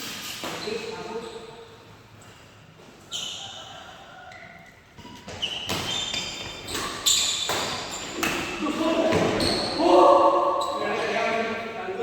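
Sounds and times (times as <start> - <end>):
shoe squeaks on court: 3.0 - 8.3, 9.2 - 9.8
racket hitting shuttlecock: 5.6 - 9.4.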